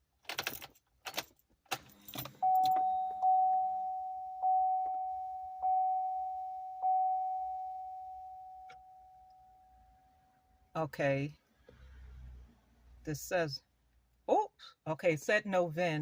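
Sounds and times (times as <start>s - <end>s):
car warning chime: 2.1s - 10.6s.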